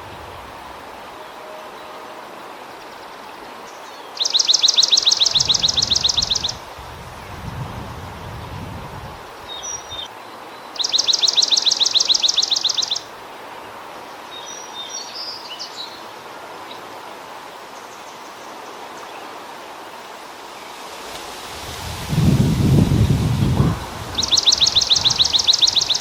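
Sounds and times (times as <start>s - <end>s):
steady background hiss: 0.0s - 26.0s
faint bird chirps: 2.9s - 6.6s, 9.5s - 13.1s, 24.0s - 26.0s
sparrow trilling: 4.2s - 6.6s, 10.8s - 13.0s, 23.7s - 26.0s.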